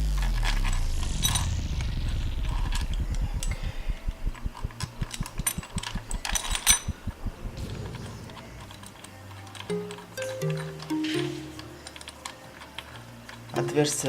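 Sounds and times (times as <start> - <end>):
low pulsing throb: 0.0 - 8.8
metal clinks of tools: 4.6 - 14.0.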